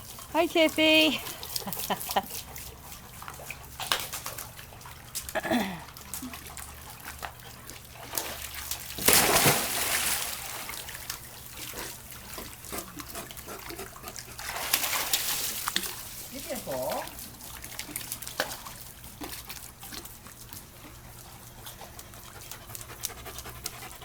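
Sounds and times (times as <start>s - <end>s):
water sloshing and dripping: 0.0s - 24.0s
loud splash: 9.0s - 10.7s.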